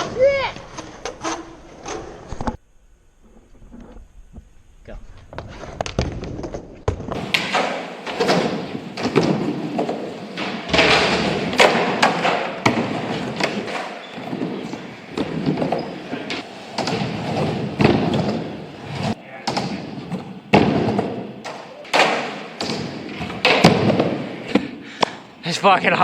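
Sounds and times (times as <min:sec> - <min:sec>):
skateboard rolling rumble: 0:03.2 - 0:19.2
skateboard clacks and thuds: 0:05.3 - 0:25.2.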